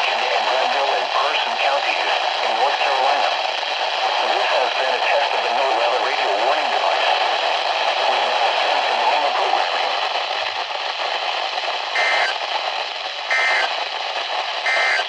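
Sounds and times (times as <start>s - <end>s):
radio static hiss: 0.0s - 15.0s
faint voice under static: 4.2s - 7.2s, 8.0s - 9.9s
squawking data bursts: 12.0s - 12.4s, 13.3s - 13.8s, 14.6s - 15.0s.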